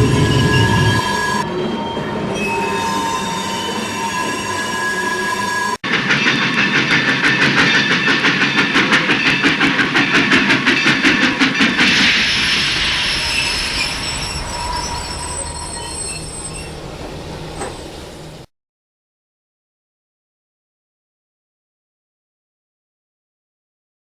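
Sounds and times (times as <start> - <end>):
high squealing tones: 0.0 - 1.5, 11.8 - 18.0
train wheels clattering over rail joints: 5.9 - 18.5
hiss: 11.8 - 18.5.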